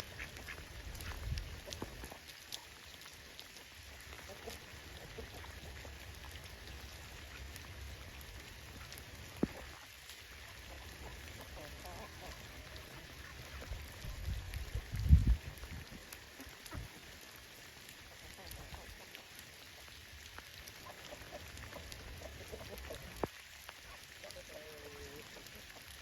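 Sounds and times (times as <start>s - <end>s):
light rain: 0.0s - 26.0s
raindrops ticking: 0.0s - 26.0s
ducks quacking: 10.4s - 13.8s, 20.8s - 23.3s.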